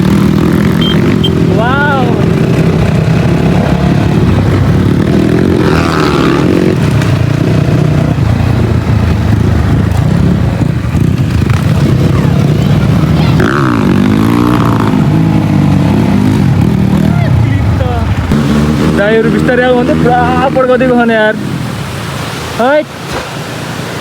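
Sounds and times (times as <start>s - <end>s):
dirt bike engine revving: 0.0s - 22.5s.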